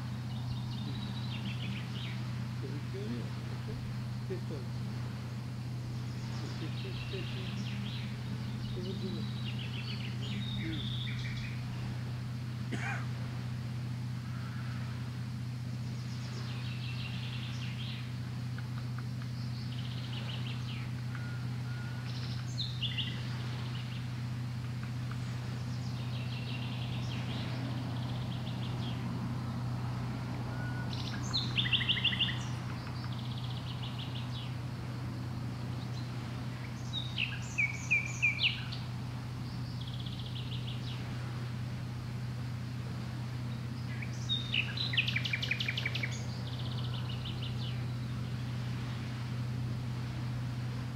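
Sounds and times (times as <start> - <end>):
songbirds chirping and trilling: 0.0 - 50.9
steady low hum: 0.0 - 50.9.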